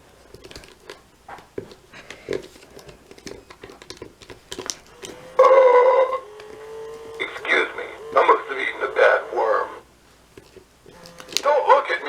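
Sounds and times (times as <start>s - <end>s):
toy mechanism plastic clicks: 1.7s - 9.8s, 10.4s - 12.0s.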